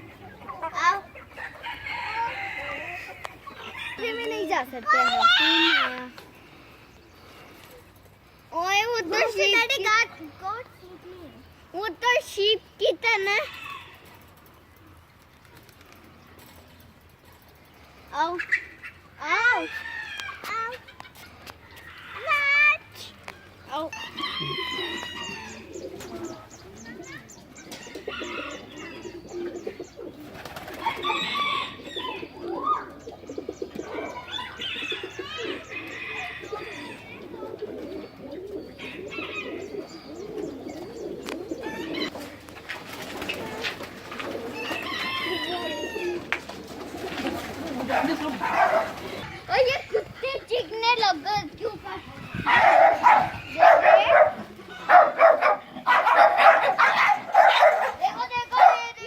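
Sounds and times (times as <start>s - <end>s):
birds cooing: 0.0s - 59.0s
dogs barking loudly: 47.7s - 50.5s, 52.4s - 59.0s.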